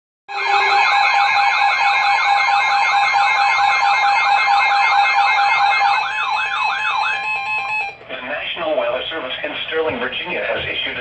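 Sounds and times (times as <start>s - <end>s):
alert signal steady tones: 0.3s - 1.4s.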